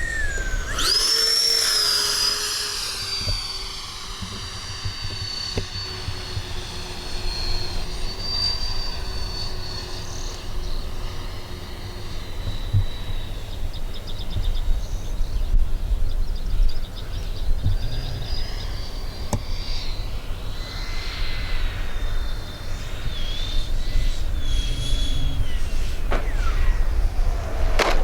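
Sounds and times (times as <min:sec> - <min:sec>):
model airplane motor whine: 0:00.0 - 0:28.0
steady low rumble: 0:22.4 - 0:28.0
sharp click: 0:27.7 - 0:28.0.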